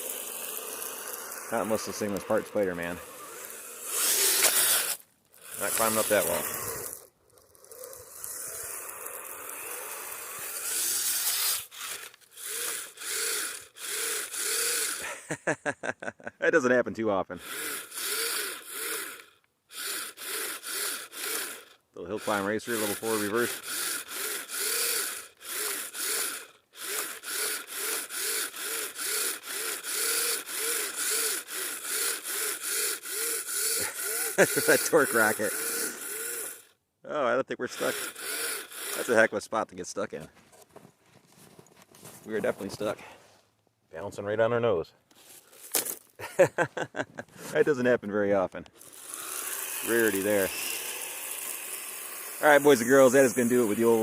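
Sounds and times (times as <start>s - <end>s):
electric motor whine: 0.0s - 15.2s, 17.4s - 36.8s, 37.7s - 39.3s, 48.7s - 54.0s
steady rasping: 0.0s - 15.2s, 17.4s - 36.8s, 37.6s - 39.6s, 48.7s - 54.0s
toy vehicle tracks grinding in snow: 0.0s - 15.4s, 17.3s - 36.8s, 37.6s - 43.4s, 45.1s - 54.0s.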